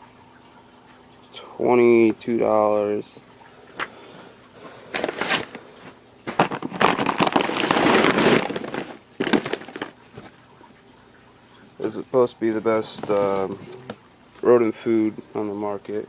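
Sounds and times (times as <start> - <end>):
packaging bag crinkling: 5.0 - 5.6, 6.3 - 10.3.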